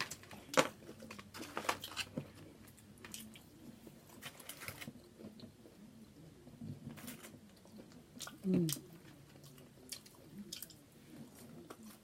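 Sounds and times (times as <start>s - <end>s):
person chewing and smacking: 6.9s - 12.0s.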